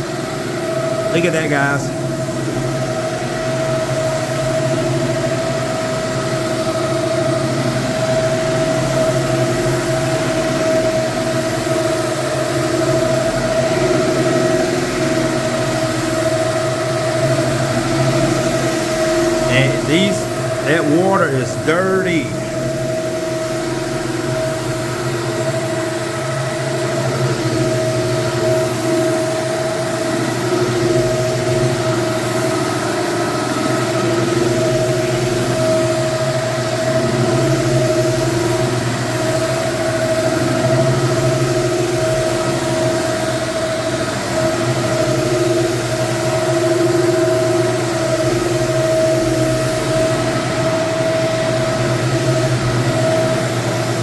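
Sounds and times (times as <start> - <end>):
floor cleaning extractor running: 0.0 - 20.9, 22.3 - 54.0.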